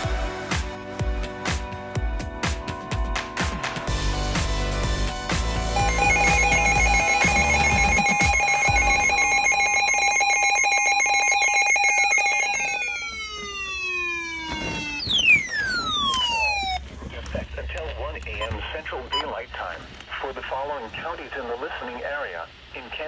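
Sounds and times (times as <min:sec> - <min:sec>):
steady high electronic tone: 0:03.9 - 0:16.9.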